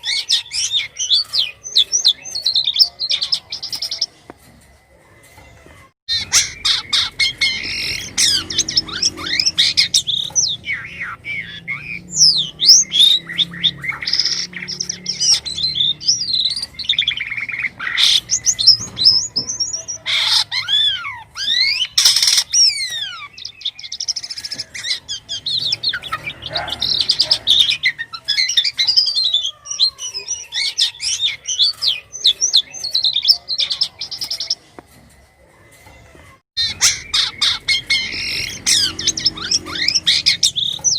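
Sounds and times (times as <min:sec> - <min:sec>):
myna singing whistles and chirps: 0:06.1 - 0:34.6, 0:36.6 - 0:40.9.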